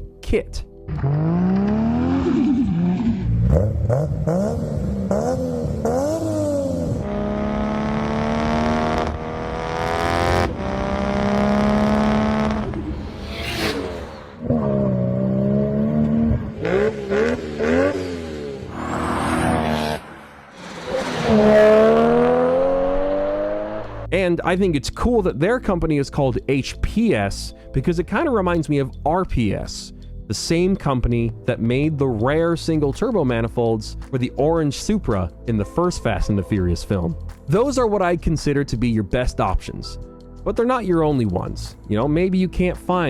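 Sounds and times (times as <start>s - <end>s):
car engine revving hard: 1.0s - 24.1s.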